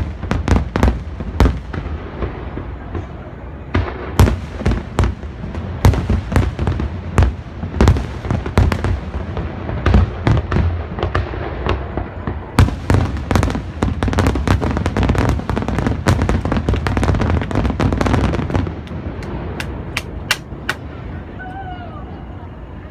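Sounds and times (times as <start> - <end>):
firework shell bursts and crackling: 4.1 - 20.9.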